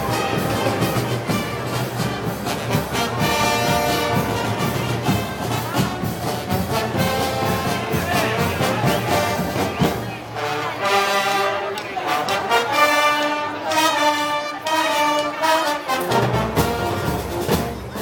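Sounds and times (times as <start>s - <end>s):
drum beat: 0.0s - 10.0s
brass band playing a march: 0.0s - 18.0s.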